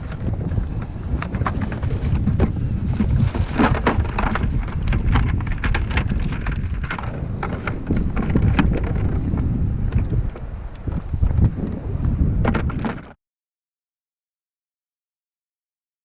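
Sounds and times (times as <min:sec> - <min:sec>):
wind buffeting microphone: 0:00.0 - 0:13.2.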